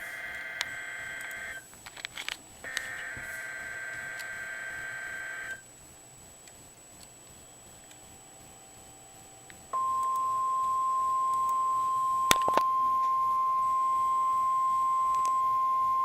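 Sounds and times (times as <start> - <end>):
faint clicks: 0.0 - 3.3, 6.4 - 16.0
low radio static: 0.0 - 16.0
screechy digital data tones: 9.8 - 16.0.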